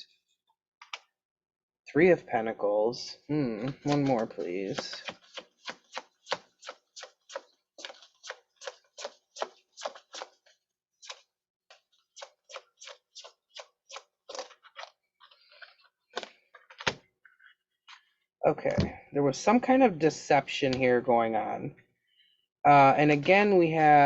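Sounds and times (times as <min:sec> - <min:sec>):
cards being shuffled: 0:03.6 - 0:18.1.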